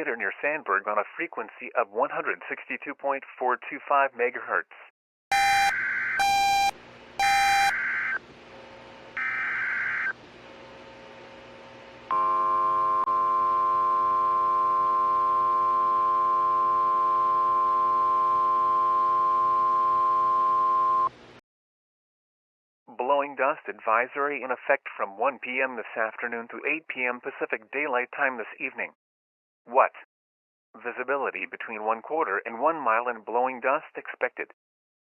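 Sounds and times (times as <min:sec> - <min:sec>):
buzzy warning alarm tone: 0:05.3 - 0:08.2, 0:09.2 - 0:10.2, 0:12.1 - 0:21.1
screeching data tones: 0:05.3 - 0:08.2, 0:09.2 - 0:10.2.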